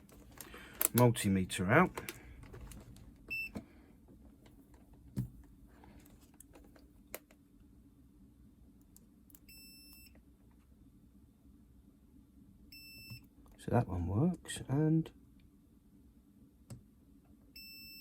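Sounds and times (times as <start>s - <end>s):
multimeter beep: 3.3s - 3.6s, 9.4s - 10.2s, 12.7s - 13.3s, 17.6s - 18.0s.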